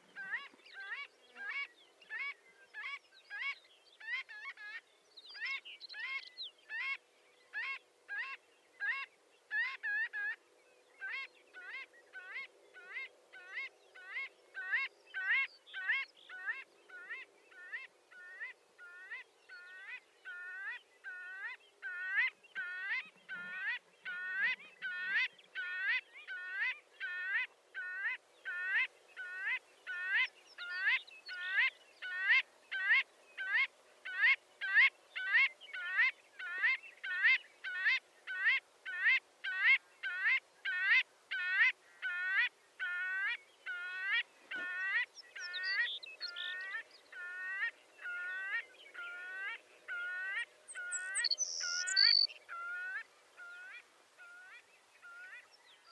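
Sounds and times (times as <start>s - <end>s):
bird nasal calls: 20.3s - 55.9s.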